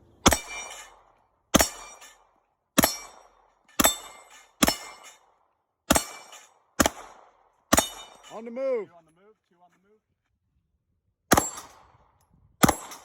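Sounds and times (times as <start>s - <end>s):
gunshots with echo: 12.6s - 13.0s.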